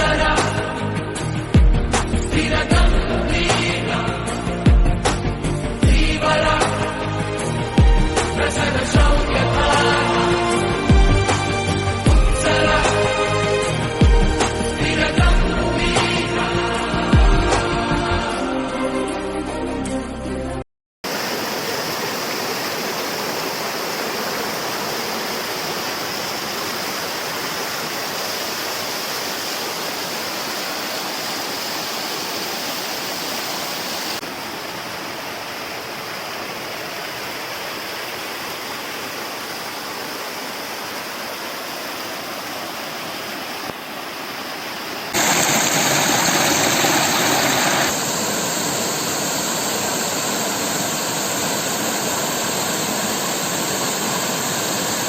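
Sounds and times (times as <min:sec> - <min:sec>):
waterfall rushing: 0:21.1 - 0:55.0.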